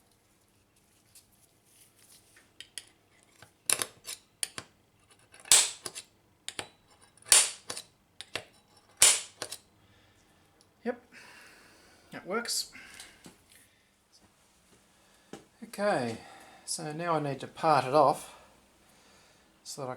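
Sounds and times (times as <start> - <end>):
centre punch metallic snap: 5.5 - 5.9, 7.3 - 7.8, 9.0 - 9.5.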